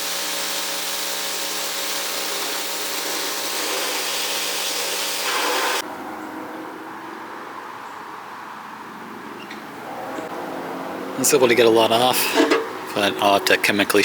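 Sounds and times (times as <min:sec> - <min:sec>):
power tool motor hum: 0:00.0 - 0:05.8
rough rubbing hiss: 0:01.9 - 0:05.8.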